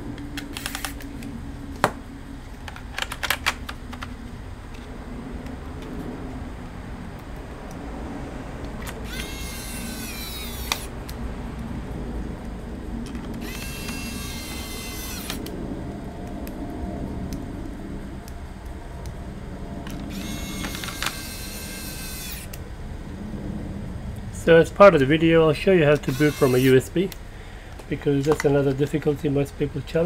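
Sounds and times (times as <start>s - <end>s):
electric screwdriver whirring: 0.4s - 1.1s, 8.8s - 11.0s, 13.3s - 15.5s, 19.9s - 22.6s, 26.0s - 26.9s.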